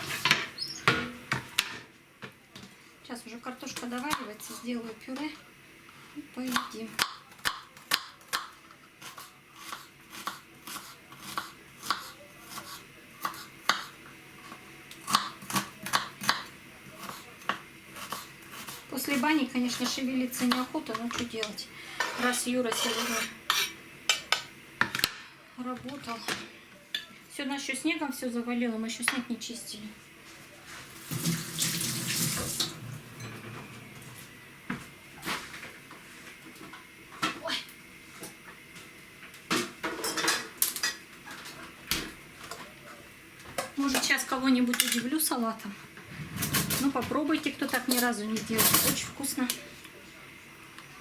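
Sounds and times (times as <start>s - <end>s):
knife chopping on cutting board: 6.5s - 13.9s
water running into sink: 30.9s - 33.2s.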